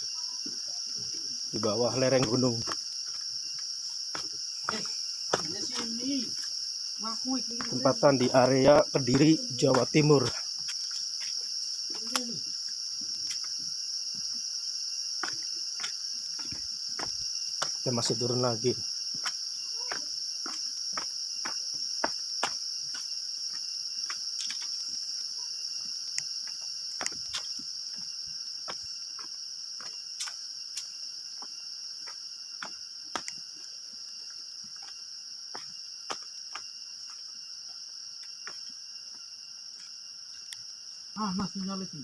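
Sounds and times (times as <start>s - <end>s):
insects droning: 0.0s - 42.0s
footsteps tapping on path: 1.6s - 6.6s, 7.6s - 12.1s, 12.8s - 14.4s, 15.1s - 40.7s.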